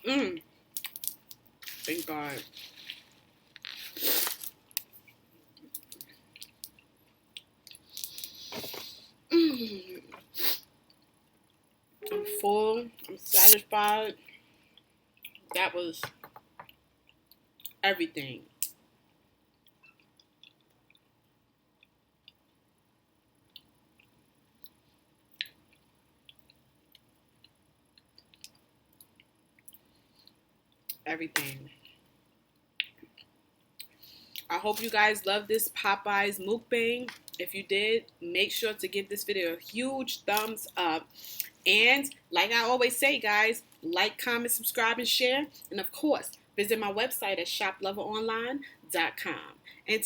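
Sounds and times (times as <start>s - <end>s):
person chewing food: 19.5s - 22.6s
wet mouth clicks and smacks: 32.8s - 34.5s.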